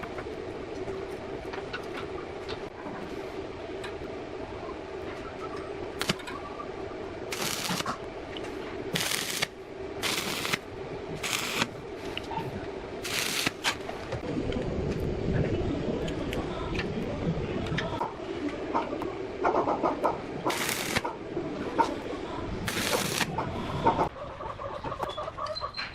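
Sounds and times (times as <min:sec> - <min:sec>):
power tool motor hum: 0:07.3 - 0:07.9, 0:11.2 - 0:11.7, 0:20.5 - 0:21.0.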